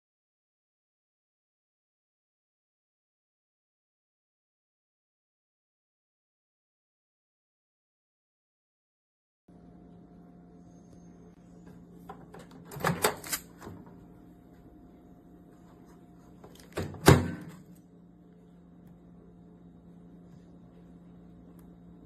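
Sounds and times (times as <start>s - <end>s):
faint steady hum: 9.5s - 22.0s
microwave door clicks: 12.3s - 13.8s, 16.6s - 17.6s.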